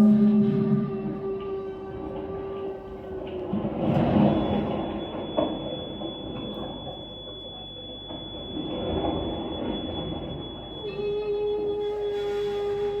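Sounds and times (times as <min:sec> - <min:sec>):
steady high whine: 0:00.0 - 0:12.2.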